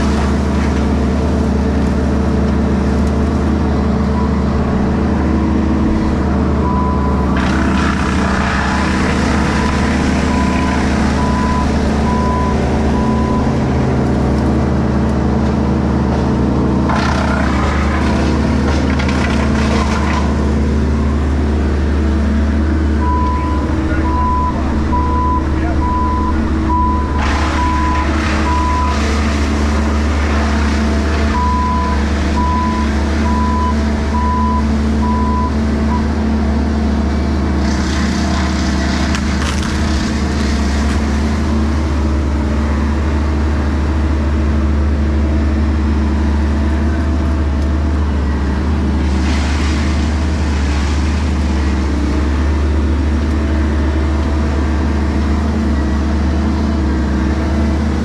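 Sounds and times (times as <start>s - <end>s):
heavy machinery engine running: 0.0s - 58.0s
reversing alarm beeping: 6.6s - 7.3s, 9.5s - 13.6s, 23.0s - 29.3s.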